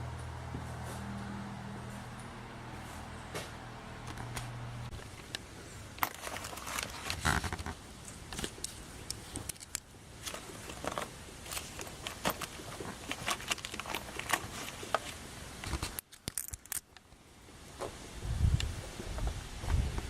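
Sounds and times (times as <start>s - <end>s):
metal clinks and knocks: 6.0s - 7.4s, 9.4s - 15.1s, 16.1s - 16.9s.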